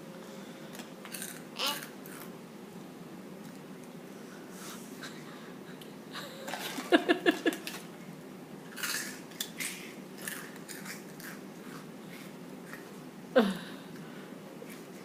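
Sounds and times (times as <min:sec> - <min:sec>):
crisp snack crunching: 0:01.1 - 0:02.3, 0:08.7 - 0:11.9.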